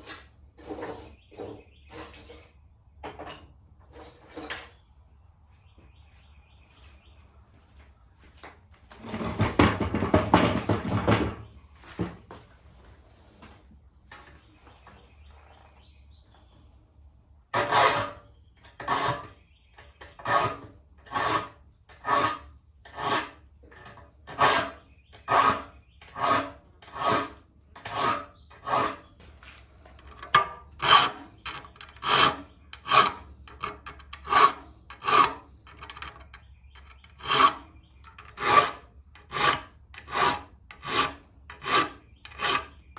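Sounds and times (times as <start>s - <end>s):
file rasping on saw teeth: 17.6s - 19.4s, 20.1s - 29.2s, 30.0s - 42.8s.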